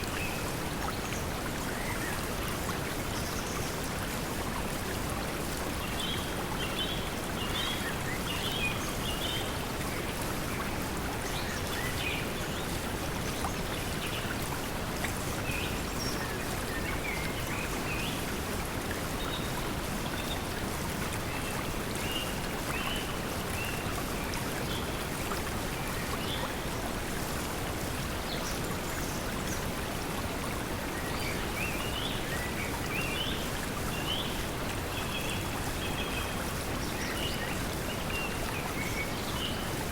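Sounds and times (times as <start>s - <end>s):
flowing water: 0.0s - 39.9s.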